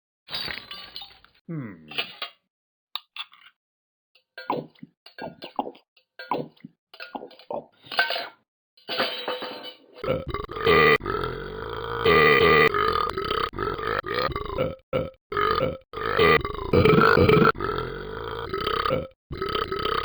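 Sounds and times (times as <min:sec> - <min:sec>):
person burping: 0:01.5 - 0:02.0, 0:10.0 - 0:20.0
clicky gulping sounds: 0:04.4 - 0:07.8, 0:10.0 - 0:20.0.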